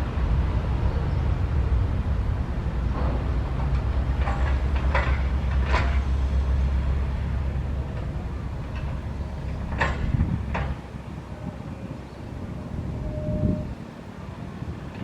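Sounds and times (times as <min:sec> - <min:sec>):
excavator diesel engine rumbling: 0:00.0 - 0:15.0
metallic clanks: 0:02.9 - 0:06.2, 0:07.9 - 0:10.8.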